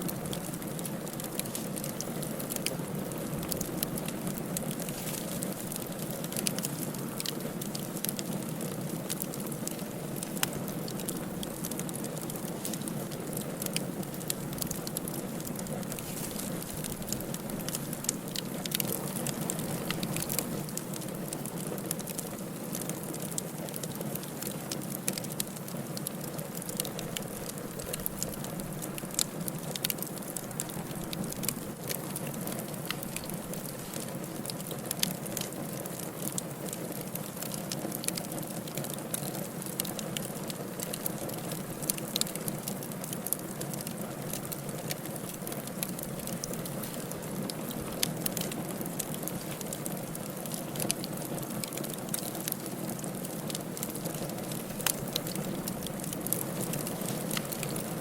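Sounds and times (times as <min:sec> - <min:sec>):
firewood crackling and popping: 0:00.0 - 0:58.0
low rush of flames: 0:00.1 - 0:22.2.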